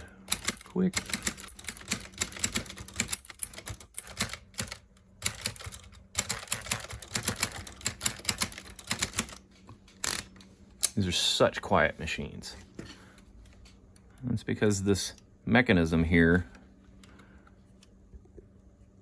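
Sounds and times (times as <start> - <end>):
typewriter typing softly: 0.0 - 9.4.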